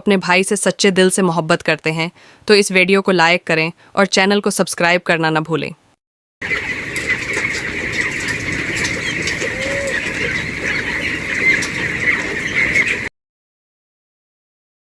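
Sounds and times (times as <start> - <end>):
chicks peeping: 6.4 - 13.1.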